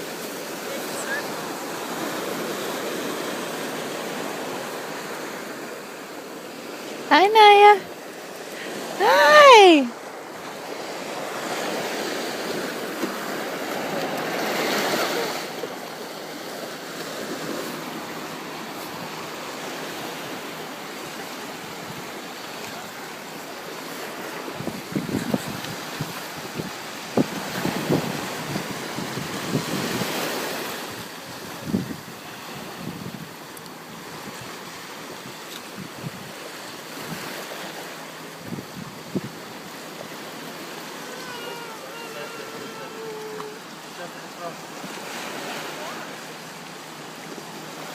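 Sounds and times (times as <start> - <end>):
ocean waves washing on shore: 0.0 - 47.9
wind buffeting microphone: 24.4 - 33.4.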